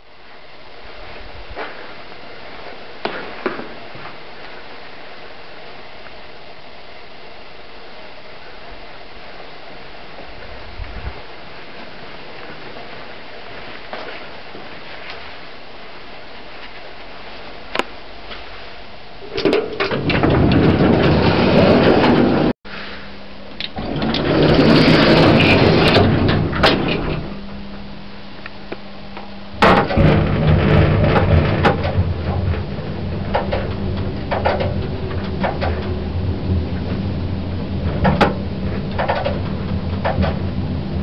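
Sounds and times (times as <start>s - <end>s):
low hum of lift running: 0.0s - 41.0s
lift door and mechanism noise: 19.2s - 22.5s, 23.5s - 27.9s, 29.5s - 41.0s.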